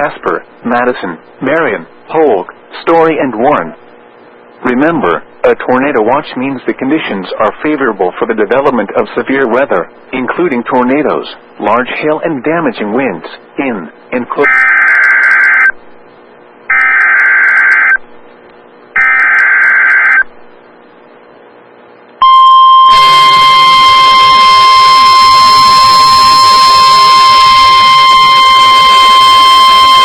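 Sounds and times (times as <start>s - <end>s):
warbling data screeches: 14.4s - 15.7s, 16.7s - 18.0s, 19.0s - 20.3s, 22.9s - 30.0s.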